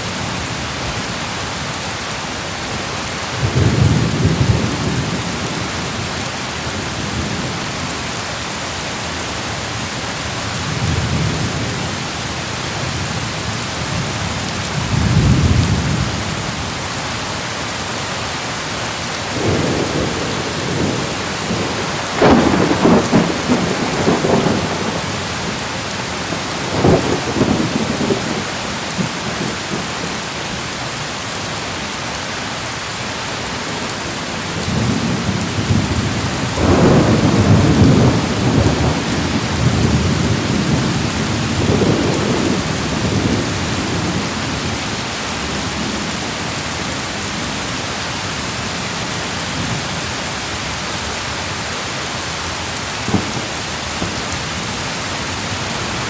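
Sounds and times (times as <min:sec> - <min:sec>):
rain hissing: 0:14.2 - 0:47.2, 0:51.5 - 0:56.0
thunder rumbling: 0:19.3 - 0:30.1, 0:34.6 - 0:44.8, 0:53.0 - 0:56.0.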